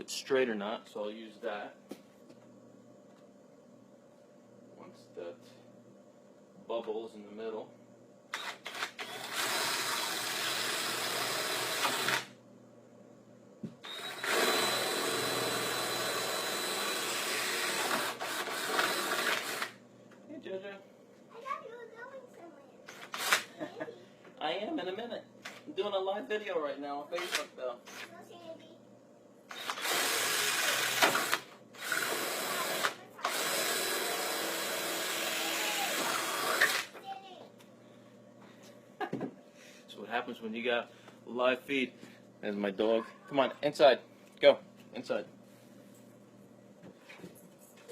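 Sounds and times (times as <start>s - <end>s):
power drill boring through vinyl: 8.4s - 12.3s, 13.8s - 19.8s, 29.5s - 36.9s.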